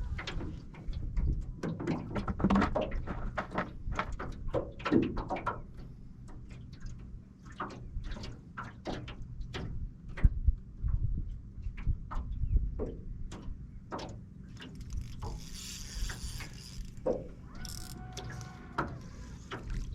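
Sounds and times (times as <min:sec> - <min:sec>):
fishing tackle clicks and knocks: 0:12.8 - 0:19.9.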